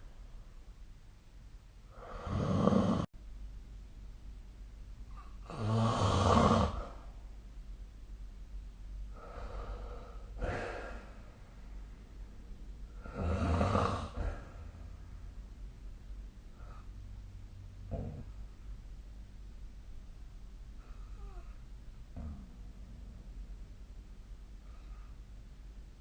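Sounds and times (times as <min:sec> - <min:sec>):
faint steady background hum: 0:00.0 - 0:26.0
person snoring: 0:01.9 - 0:03.1, 0:05.4 - 0:07.0, 0:09.1 - 0:11.2, 0:12.9 - 0:14.8, 0:17.9 - 0:18.4.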